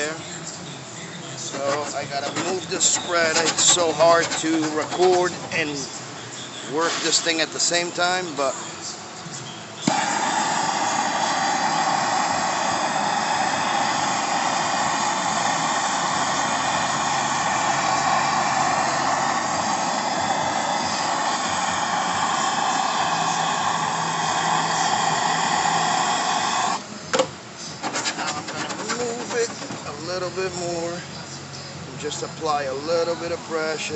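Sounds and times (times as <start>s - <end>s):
heat gun blowing: 1.5s - 5.8s, 9.8s - 26.9s, 27.8s - 30.4s.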